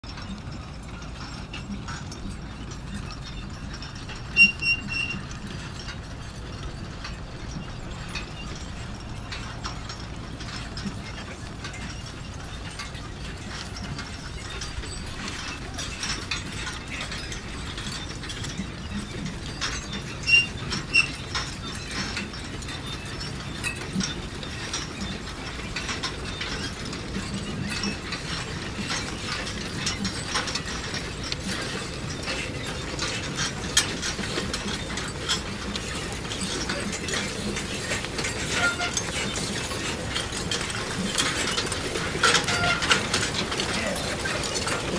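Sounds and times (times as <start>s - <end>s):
manure spreader gears rattling: 0.1s - 44.9s
metal clanks: 0.1s - 44.9s.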